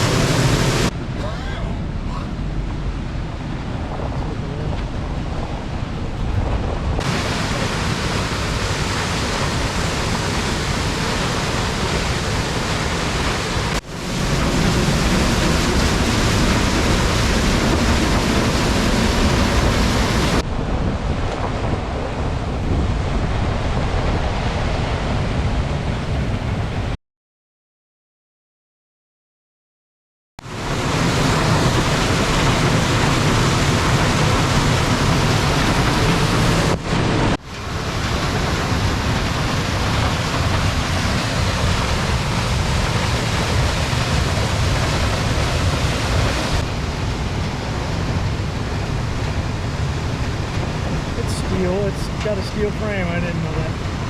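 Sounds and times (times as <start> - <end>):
river water rushing: 0.0 - 1.4, 7.0 - 20.4, 30.4 - 54.0.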